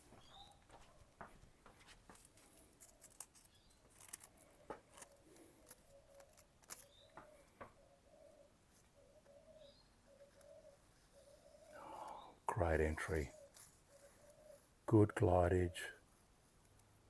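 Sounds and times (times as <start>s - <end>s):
dove cooing: 7.2s - 12.2s.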